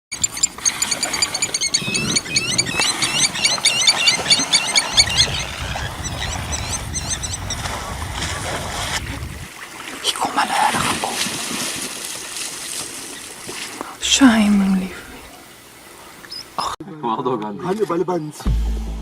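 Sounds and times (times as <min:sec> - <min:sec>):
wild dogs twittering: 0:00.1 - 0:08.2, 0:12.6 - 0:16.8
steady low rumble: 0:04.9 - 0:09.5.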